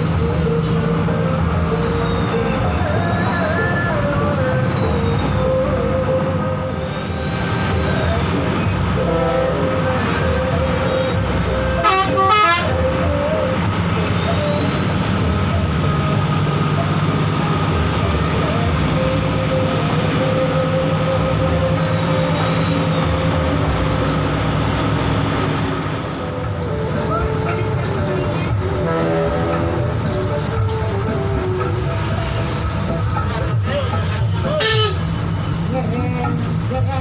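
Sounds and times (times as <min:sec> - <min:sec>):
bus engine and road noise: 0:00.0 - 0:37.0
short horn blast: 0:11.8 - 0:12.8.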